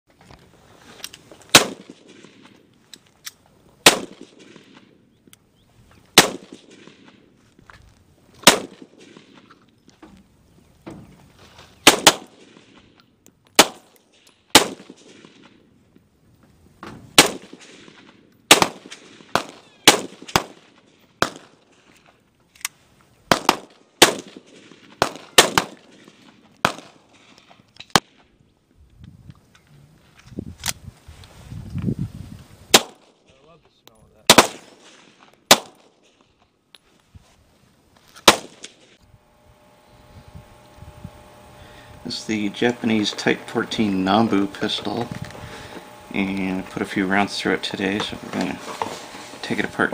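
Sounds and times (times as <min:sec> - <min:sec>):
pistol shots: 0:01.5 - 0:02.6, 0:03.8 - 0:04.9, 0:06.2 - 0:07.3, 0:08.4 - 0:09.5, 0:11.8 - 0:12.9, 0:13.6 - 0:15.6, 0:17.1 - 0:21.7, 0:23.3 - 0:27.1, 0:32.7 - 0:33.2, 0:34.3 - 0:36.0, 0:38.2 - 0:38.8.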